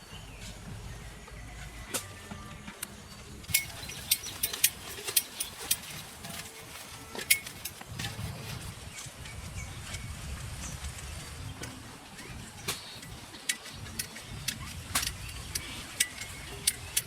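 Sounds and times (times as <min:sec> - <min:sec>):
cooking utensils clinking: 0:03.5 - 0:08.4.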